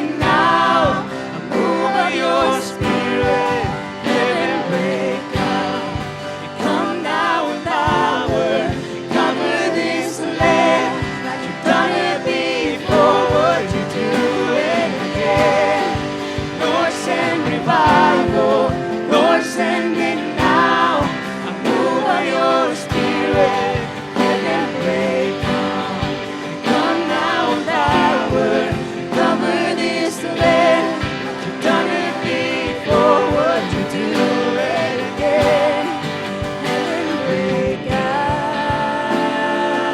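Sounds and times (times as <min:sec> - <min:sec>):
guitar-led band with beat: 0:00.0 - 0:39.9
voices singing worship song: 0:00.0 - 0:39.9.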